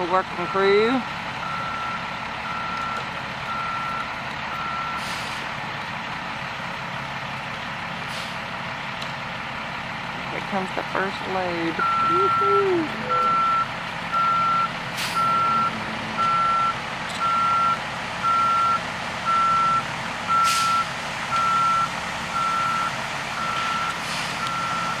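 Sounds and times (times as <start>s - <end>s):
truck reversing alarm beeping: 0.0s - 5.5s, 10.7s - 25.0s
truck engine running: 0.0s - 25.0s.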